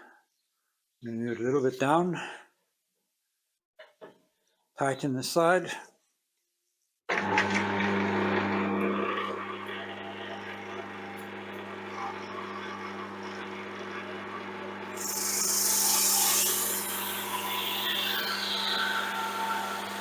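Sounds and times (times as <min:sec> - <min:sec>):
drum sander motor hum: 0:07.1 - 0:20.0
sanding drum hissing on board: 0:13.8 - 0:20.0.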